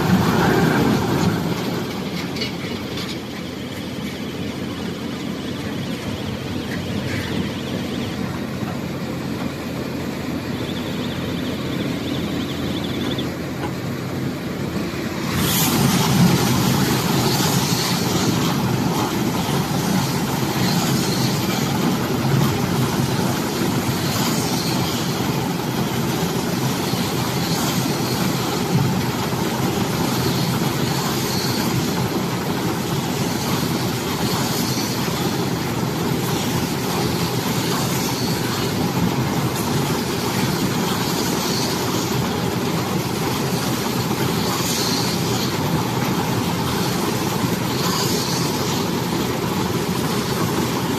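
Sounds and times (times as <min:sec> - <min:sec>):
baler machine running: 0:00.0 - 0:50.9.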